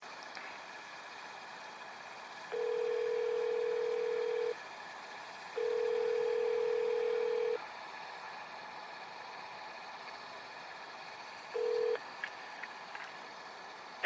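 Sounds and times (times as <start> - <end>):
telephone ringback tone: 2.5 - 4.6, 5.6 - 7.6, 11.6 - 12.0.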